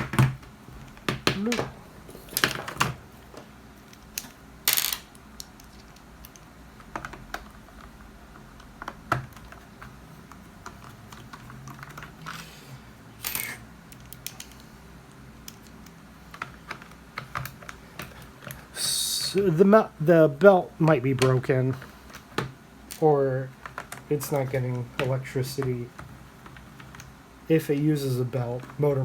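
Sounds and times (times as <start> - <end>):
plastic parts clicking: 0.0 - 12.4.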